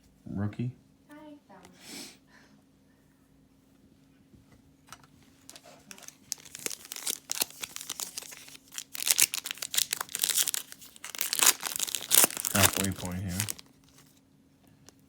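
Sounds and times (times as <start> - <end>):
plastic wrapper tearing and crinkling: 5.5 - 14.1.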